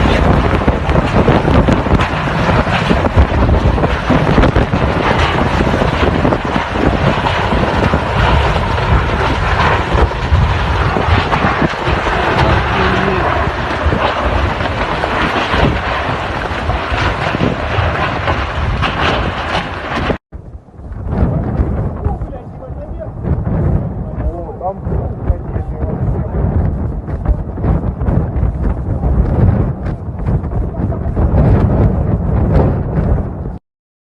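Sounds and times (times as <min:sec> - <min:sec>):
strong wind roaring: 0:00.0 - 0:33.6
wind buffeting microphone: 0:00.0 - 0:33.6.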